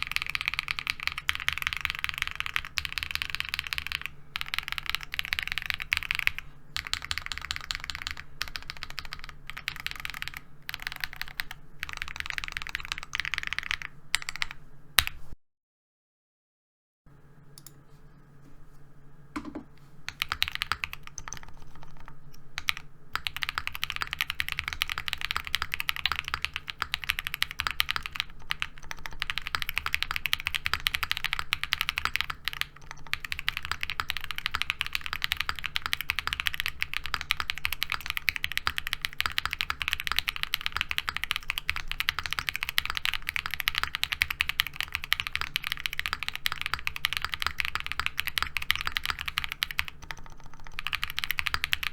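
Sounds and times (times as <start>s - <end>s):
mechanical keyboard typing: 0.0s - 14.6s, 20.1s - 51.9s.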